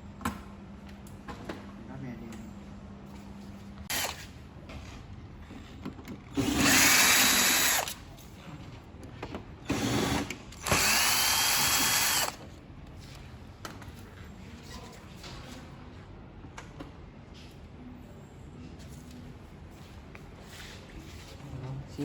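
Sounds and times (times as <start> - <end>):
power drill motor whine: 3.9 - 4.2, 6.4 - 8.0, 9.7 - 12.4.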